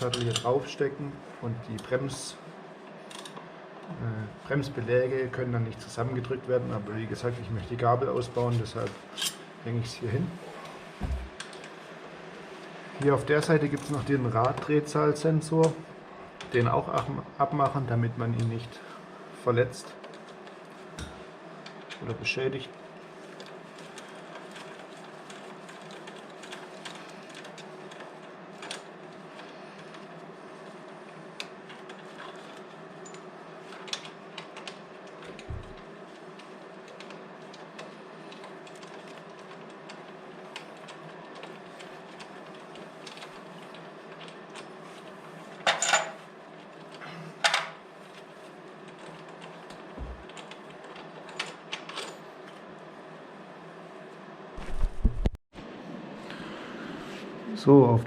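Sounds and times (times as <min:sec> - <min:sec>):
workshop hum: 0:00.0 - 0:58.0
tools and metal parts clinking: 0:45.6 - 0:46.2.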